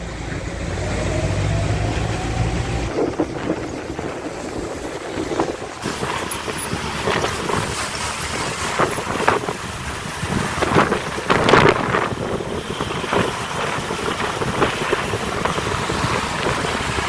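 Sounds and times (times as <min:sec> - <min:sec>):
faint rising whine: 0:00.0 - 0:03.9
heavy machinery diesel engine running: 0:00.0 - 0:17.0.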